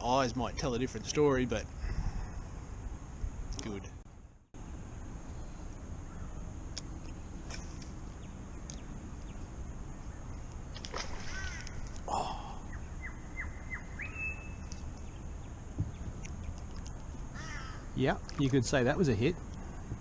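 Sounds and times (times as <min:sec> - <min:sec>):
wild birds calling: 0:05.4 - 0:06.6, 0:07.2 - 0:18.0
whistled bird notes: 0:12.6 - 0:15.2.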